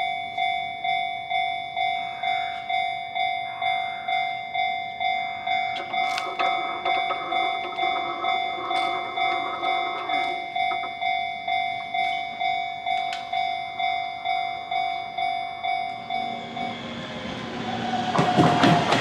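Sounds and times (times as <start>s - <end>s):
level crossing bell clanging: 0.0s - 19.0s.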